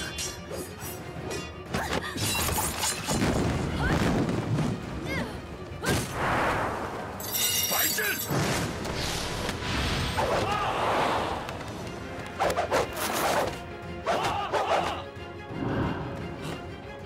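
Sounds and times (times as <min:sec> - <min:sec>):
dramatic background music: 0:00.0 - 0:17.0
fighters shouting: 0:14.0 - 0:15.1.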